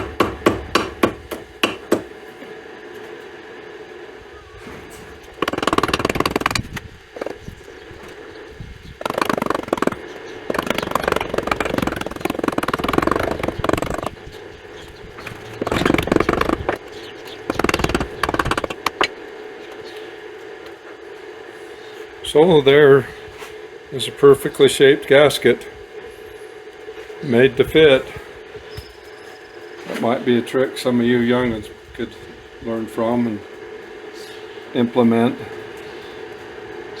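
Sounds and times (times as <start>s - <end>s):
hammer tapping on gasket: 0.0s - 2.1s, 5.4s - 7.4s, 9.0s - 14.2s, 17.5s - 19.1s.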